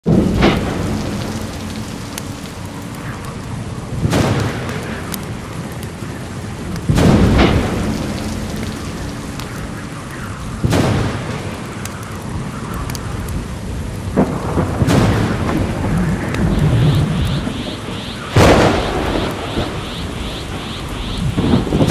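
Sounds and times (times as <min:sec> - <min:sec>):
steady rain: 0:00.0 - 0:21.9
thunder cracks: 0:00.1 - 0:03.2, 0:06.8 - 0:12.5, 0:13.4 - 0:21.9.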